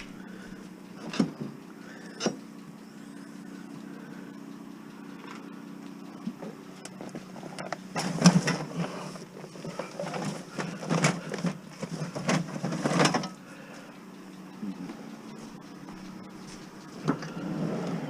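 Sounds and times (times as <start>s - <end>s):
steady low hum: 0.0s - 18.0s
junk rustling and clattering: 7.0s - 13.4s.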